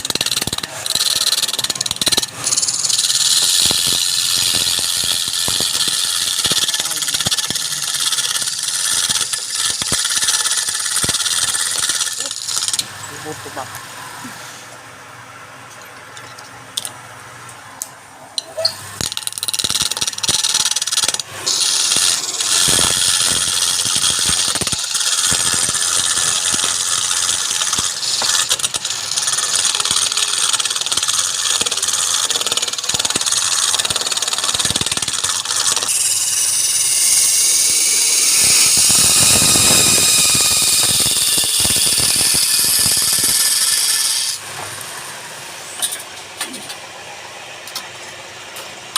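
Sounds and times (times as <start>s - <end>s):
lathe tool scraping workpiece: 0.0s - 13.6s, 19.0s - 46.1s
lathe tool clicks: 19.0s - 36.0s.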